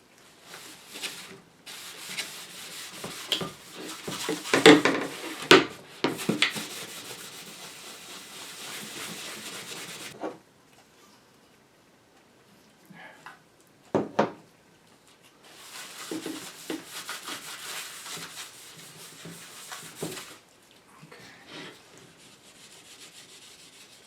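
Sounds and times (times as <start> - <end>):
steel wool scrubbing a panel: 0.4 - 10.2, 15.5 - 20.4, 21.8 - 24.0.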